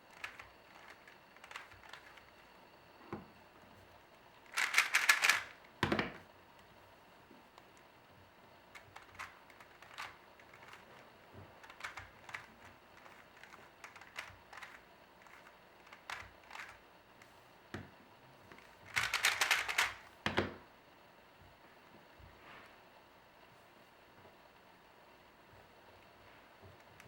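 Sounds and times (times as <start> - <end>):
puzzle cube turning clicks: 0.0 - 2.4, 4.4 - 5.7, 8.8 - 11.0, 11.6 - 16.8, 18.6 - 20.0.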